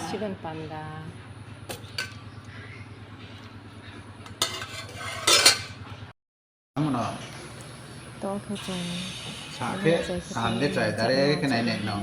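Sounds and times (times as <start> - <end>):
utensils clinking on cookware: 4.4 - 5.8
utensils scraping cookware: 4.4 - 5.8
low steady hum: 6.8 - 12.0.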